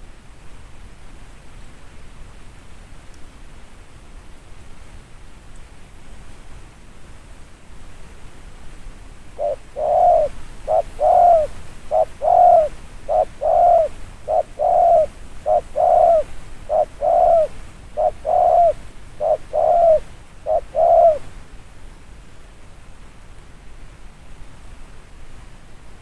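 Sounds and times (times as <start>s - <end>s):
dove cooing: 9.4s - 21.3s.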